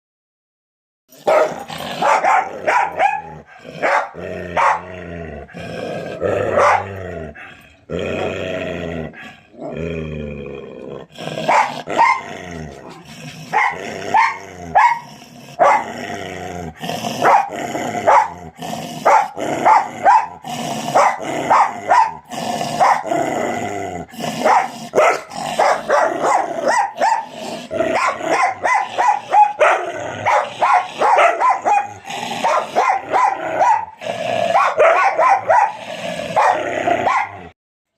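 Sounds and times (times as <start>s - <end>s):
dog growling: 1.1s - 37.6s
dog barking: 1.2s - 4.9s, 6.5s - 7.0s, 11.4s - 12.3s, 12.9s - 15.9s, 17.2s - 18.4s, 19.0s - 23.1s, 24.4s - 37.5s.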